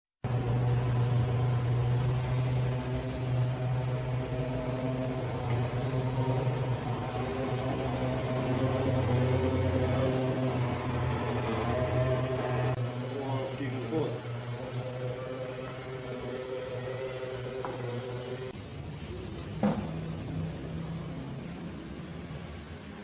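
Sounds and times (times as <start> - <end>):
electric motor humming: 0.3 - 18.6.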